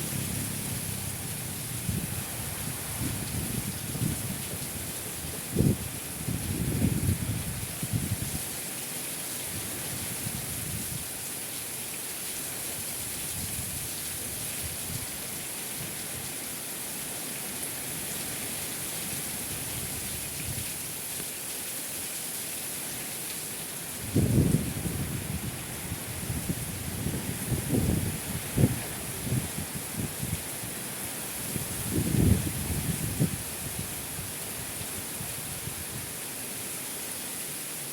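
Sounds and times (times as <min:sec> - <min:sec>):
low wind rumble: 0:00.0 - 0:08.3, 0:24.0 - 0:30.8, 0:31.4 - 0:34.9
rain pouring: 0:00.0 - 0:37.9.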